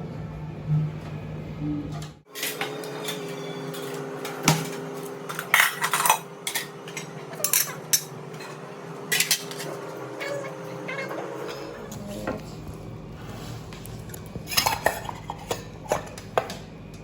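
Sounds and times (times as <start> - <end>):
plates and spoons clinking: 2.3 - 10.4, 14.4 - 16.6
steady low hum: 9.9 - 17.0.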